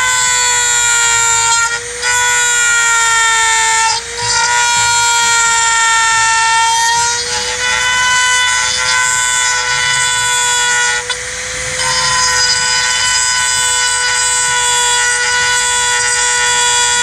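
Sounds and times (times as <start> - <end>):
rotary tool whining: 0.0 - 17.0.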